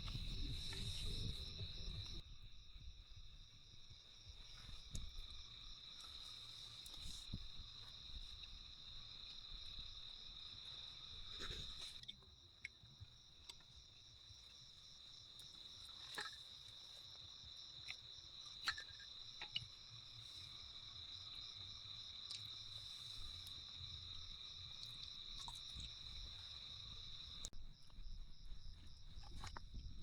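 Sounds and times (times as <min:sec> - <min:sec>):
crickets chirping: 0:00.0 - 0:30.0.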